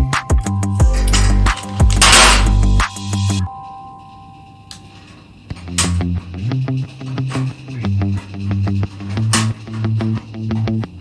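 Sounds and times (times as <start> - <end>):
bass-heavy beat: 0.0 - 3.5
held music tones: 0.0 - 11.0.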